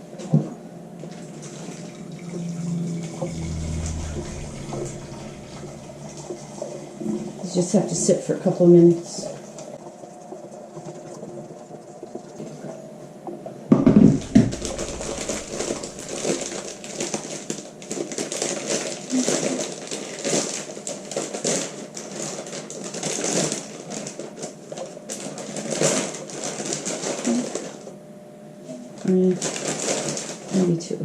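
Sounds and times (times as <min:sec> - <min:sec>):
loud knocks: 0:13.7 - 0:16.6.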